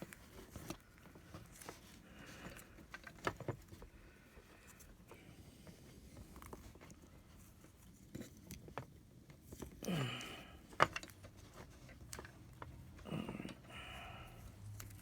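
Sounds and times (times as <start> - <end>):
low grunt: 13.0 - 13.6.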